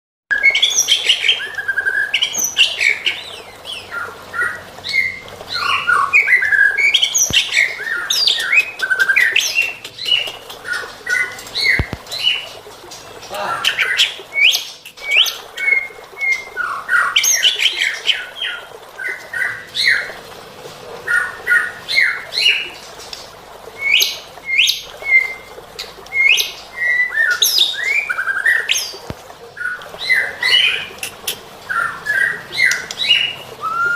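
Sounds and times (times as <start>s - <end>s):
bird singing varied whistles: 31.8s - 33.9s.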